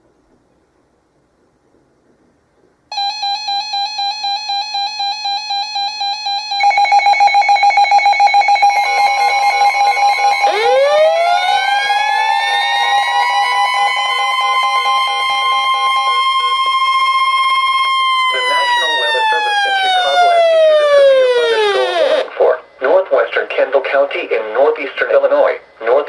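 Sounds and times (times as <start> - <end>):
pulsing alarm beep: 2.9 - 22.3
rising alarm wails: 2.9 - 22.3
steady alarm tone: 2.9 - 22.3.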